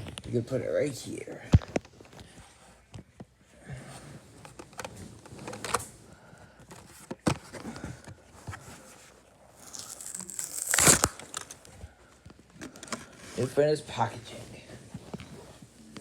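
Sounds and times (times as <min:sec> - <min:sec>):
packaging rustling: 0:09.6 - 0:13.5.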